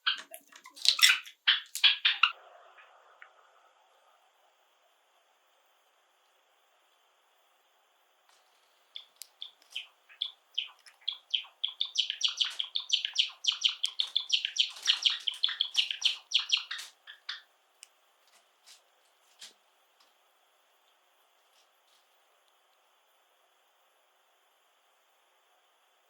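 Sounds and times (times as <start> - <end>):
sparrow singing rapid notes: 8.8 - 17.5.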